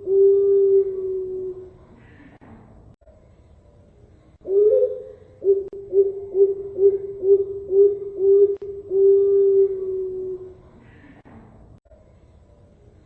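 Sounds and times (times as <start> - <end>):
zebra dove cooing: 0.0 - 2.4, 4.5 - 11.2.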